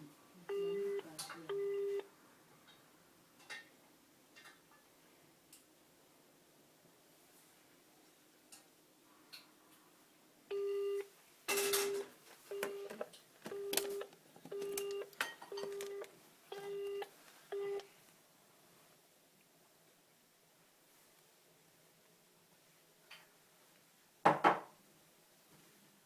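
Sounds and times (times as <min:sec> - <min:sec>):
telephone keypad beeps: 0:00.5 - 0:02.0, 0:10.5 - 0:17.9.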